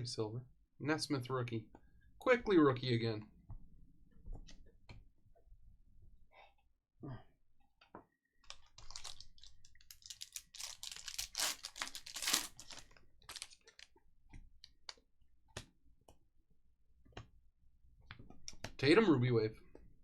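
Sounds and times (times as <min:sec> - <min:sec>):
plastic wrapper tearing and crinkling: 0:08.4 - 0:13.9.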